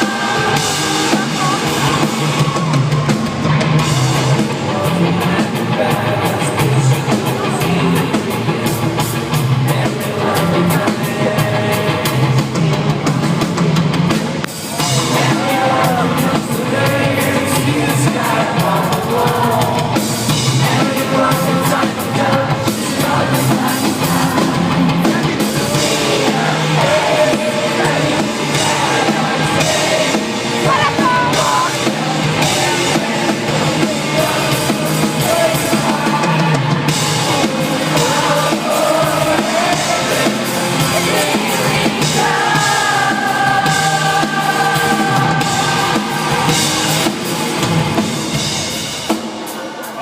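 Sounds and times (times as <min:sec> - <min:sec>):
drum kit: 0:00.0 - 0:50.0
rock band playing live: 0:00.0 - 0:50.0
person singing: 0:20.6 - 0:46.5.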